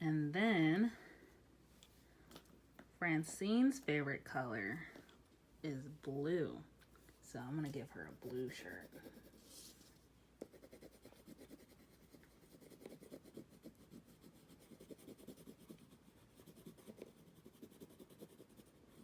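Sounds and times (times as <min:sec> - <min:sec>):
scratching of colouring on paper: 0:07.6 - 0:19.0.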